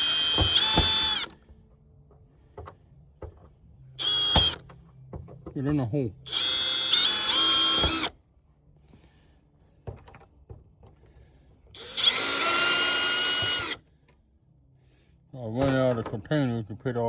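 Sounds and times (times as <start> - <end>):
drill-driver motor whine: 0.0 - 1.5, 4.0 - 4.7, 6.3 - 8.1, 11.7 - 13.8.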